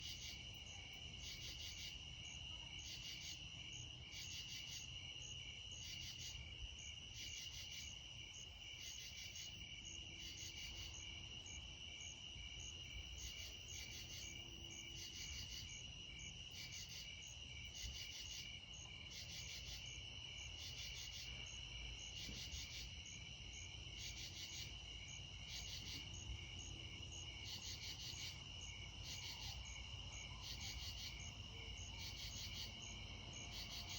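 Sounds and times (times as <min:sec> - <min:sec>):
crickets trilling: 0:00.0 - 0:33.9
high pulsed insect chirps: 0:19.1 - 0:33.9.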